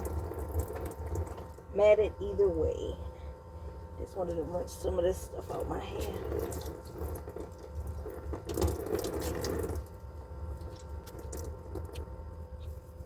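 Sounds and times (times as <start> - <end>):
low steady hum: 0.0 - 13.0
water splashing on hair: 5.5 - 10.0.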